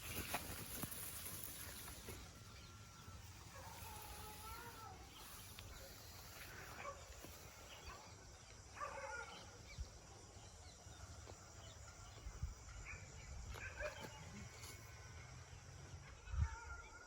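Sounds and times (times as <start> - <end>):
faint outdoor background noise: 0.0 - 17.0
dog barking: 6.7 - 7.2, 8.7 - 9.6, 12.8 - 14.2.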